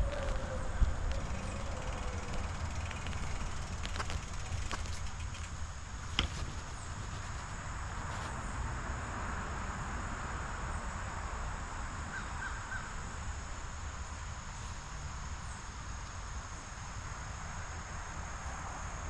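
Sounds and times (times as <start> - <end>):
wind rushing over microphone: 0.0 - 5.0
bicycle tyres rolling on pavement: 0.0 - 19.0.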